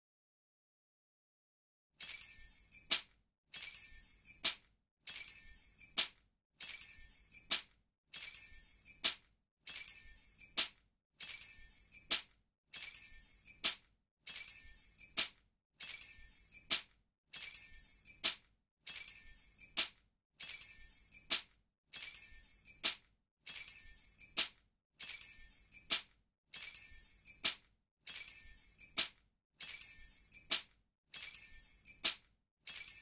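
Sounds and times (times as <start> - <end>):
sharp click: 10.6 - 11.4, 12.1 - 12.4, 25.9 - 26.2.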